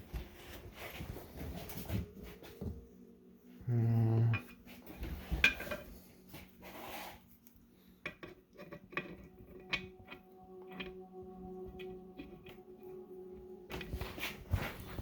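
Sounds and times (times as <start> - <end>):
metal scrape: 4.6 - 7.4.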